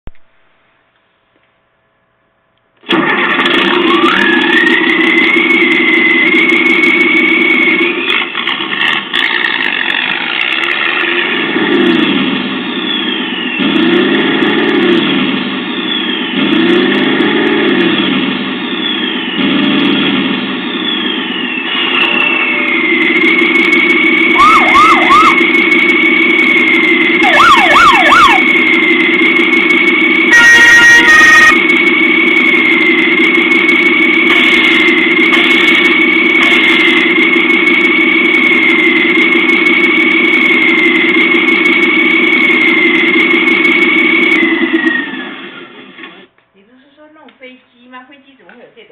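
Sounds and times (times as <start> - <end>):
sampled truck engine revving: 2.8 - 46.3
high tone: 18.6 - 44.4.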